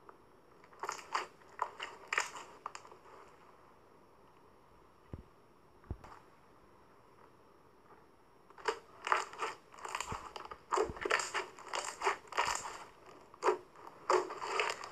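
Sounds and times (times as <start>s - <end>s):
slime crackling and popping: 0.6s - 3.0s, 8.5s - 14.9s.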